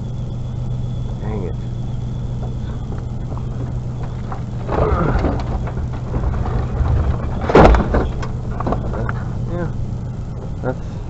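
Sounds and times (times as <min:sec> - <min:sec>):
vehicle engine idling: 0:00.0 - 0:11.0
scrap metal being shifted: 0:02.6 - 0:09.4.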